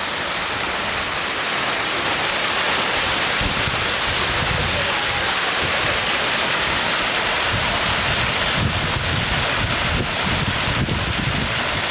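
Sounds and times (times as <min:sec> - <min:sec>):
waterfall rushing: 0:00.0 - 0:11.9
wind buffeting microphone: 0:03.4 - 0:04.9, 0:06.7 - 0:11.9.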